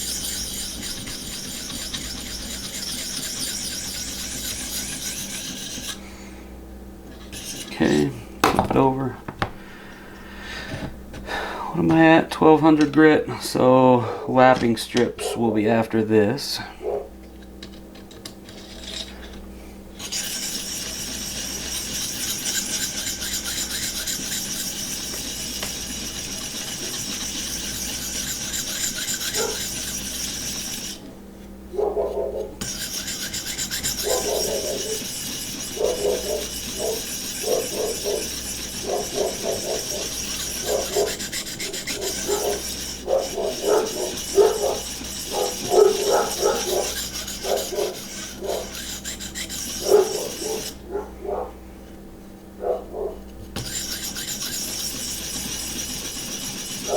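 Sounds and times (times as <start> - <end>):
sharpening stone scraping knife edge: 0.0 - 6.0, 18.4 - 19.4, 20.0 - 31.0, 32.6 - 50.8, 53.6 - 56.9.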